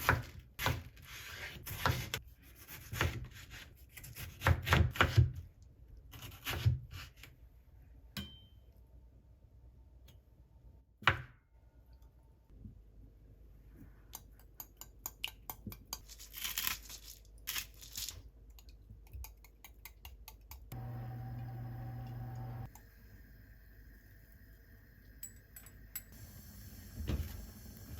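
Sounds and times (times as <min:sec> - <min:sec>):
package tearing and rustling: 0:16.0 - 0:18.3
low hum: 0:20.8 - 0:26.5.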